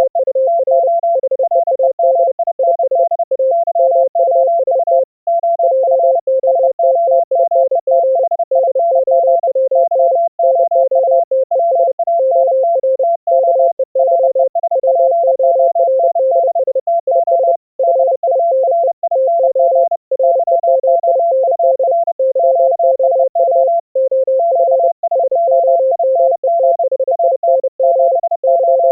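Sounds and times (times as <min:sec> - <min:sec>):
higher morse code signal: 0:00.0 - 0:28.9
lower morse code signal: 0:00.0 - 0:28.9.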